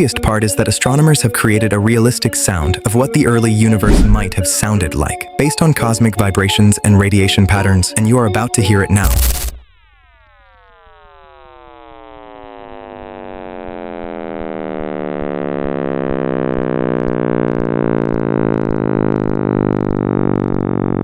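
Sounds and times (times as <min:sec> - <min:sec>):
synthesized tones gliding down: 0:00.0 - 0:08.8
deep steady hum: 0:00.3 - 0:05.4, 0:15.0 - 0:21.0.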